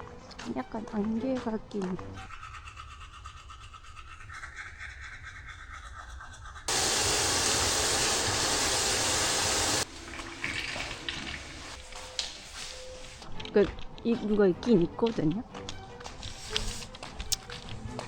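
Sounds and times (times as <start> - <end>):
loud rush of water: 6.7 - 9.8.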